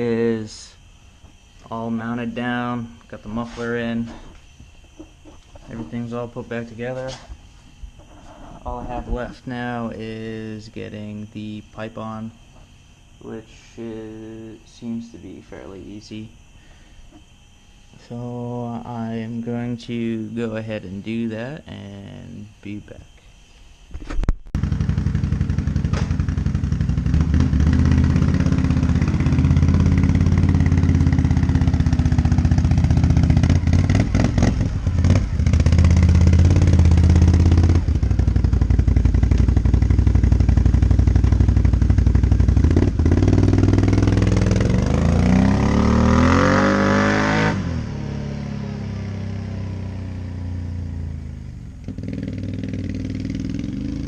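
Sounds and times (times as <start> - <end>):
atv engine running and revving: 24.6 - 54.0.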